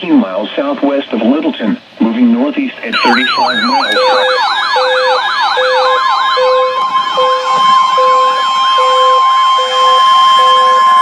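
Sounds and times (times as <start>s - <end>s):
steady high alarm tone: 2.8s - 11.0s
warbling siren: 2.8s - 11.0s
low pulsing beep: 2.9s - 5.0s.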